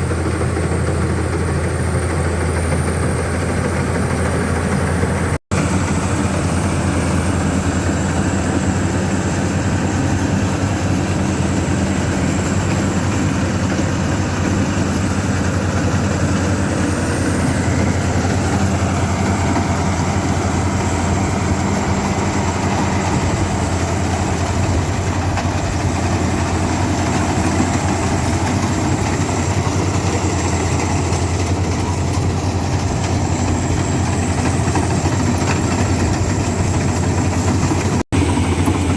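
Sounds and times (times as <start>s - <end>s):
heavy engine running: 0.0s - 38.9s.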